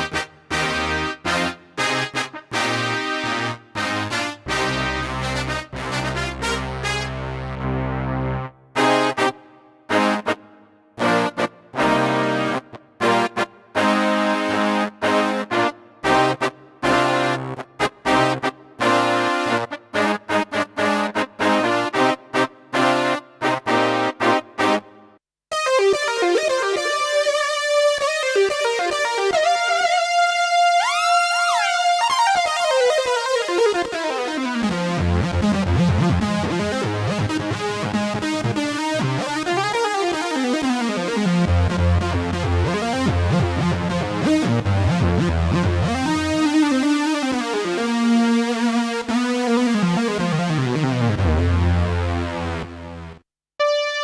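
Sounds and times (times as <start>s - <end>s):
synthesizer playing: 30.9s - 54.0s.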